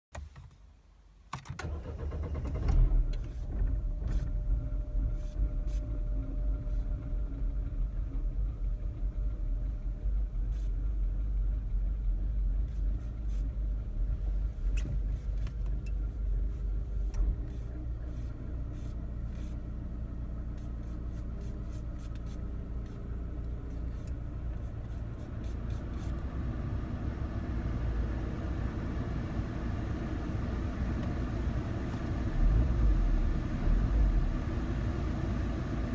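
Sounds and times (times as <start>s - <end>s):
car engine cranking: 1.3s - 9.5s
engine idling unevenly: 3.1s - 35.9s.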